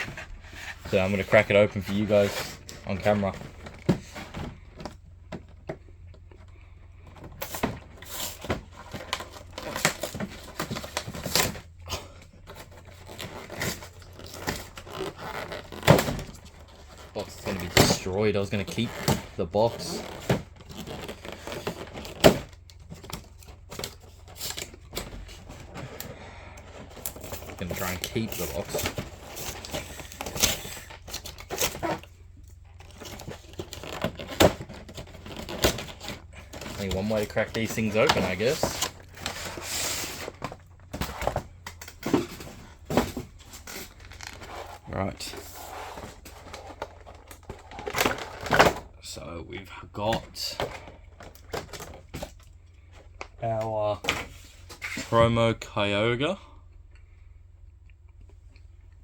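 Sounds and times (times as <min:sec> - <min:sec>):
scraping and rubbing on cardboard: 0:00.0 - 0:03.3, 0:36.8 - 0:40.4
cardboard box tearing: 0:32.8 - 0:40.4.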